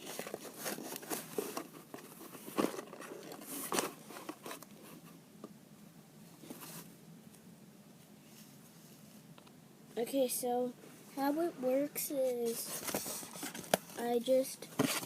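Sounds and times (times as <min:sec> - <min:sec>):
handling knocks and rustles: 0:00.0 - 0:05.2, 0:14.8 - 0:15.0.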